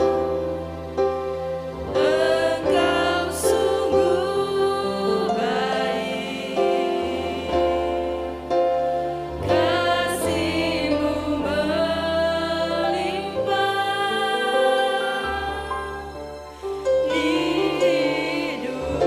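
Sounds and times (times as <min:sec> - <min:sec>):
person singing: 0:09.5 - 0:19.0.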